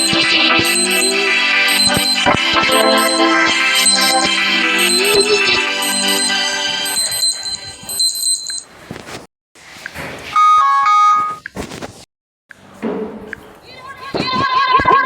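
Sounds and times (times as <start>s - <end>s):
quick run of beeping notes: 0.0s - 8.6s
phone chiming tone: 0.0s - 8.7s, 10.4s - 11.4s.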